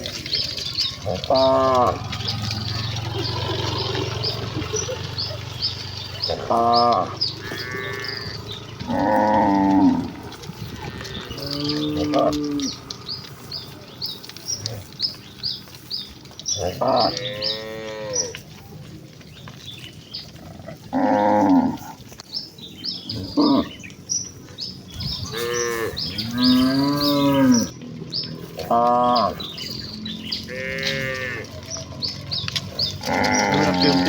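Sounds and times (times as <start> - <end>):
cows mooing: 0.0 - 13.7, 16.4 - 18.5, 20.2 - 22.1, 23.1 - 23.8, 25.0 - 27.8, 28.4 - 34.0.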